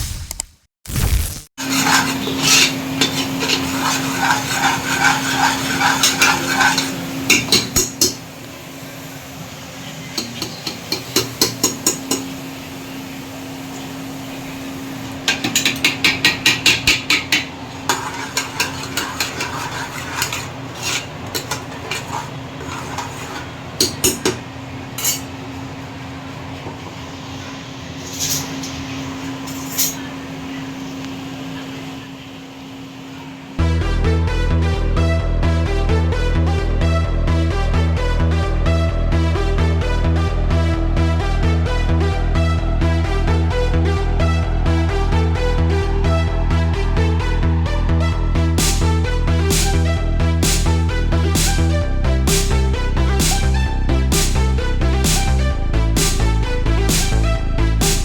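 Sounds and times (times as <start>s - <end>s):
steady low hum: 1.6s - 10.5s, 17.1s - 58.0s.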